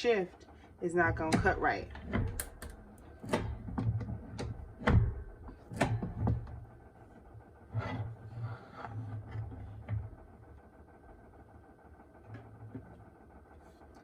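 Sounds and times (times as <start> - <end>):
sharp clicks and light knocks: 1.2 - 6.6.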